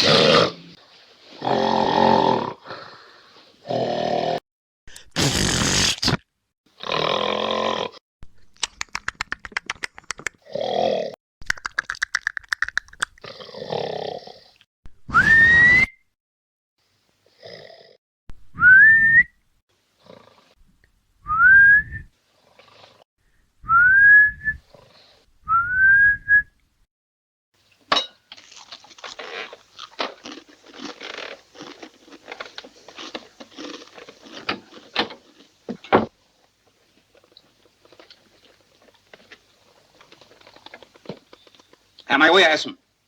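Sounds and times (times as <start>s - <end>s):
crackling and rustling: 28.3s - 42.0s.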